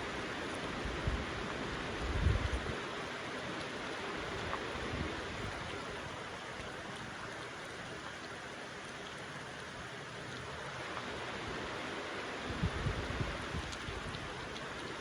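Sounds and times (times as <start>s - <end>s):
steady rain hiss: 0.0s - 15.0s.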